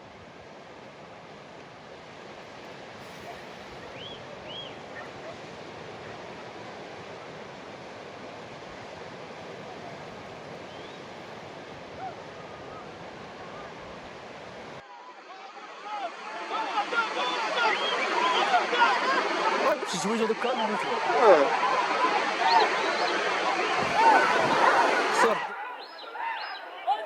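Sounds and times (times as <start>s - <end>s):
steady outdoor rushing noise: 0.0s - 27.0s
bird chirps: 3.0s - 5.1s, 25.6s - 27.0s.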